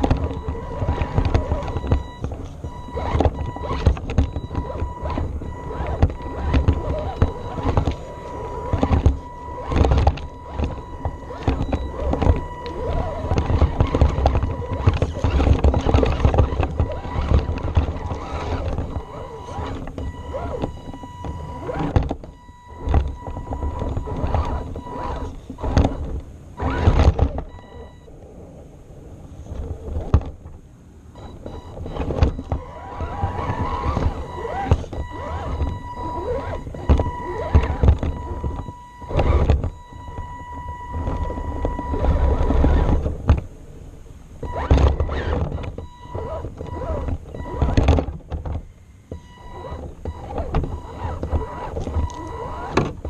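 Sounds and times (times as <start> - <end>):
electric motor whine: 0.0 - 22.0.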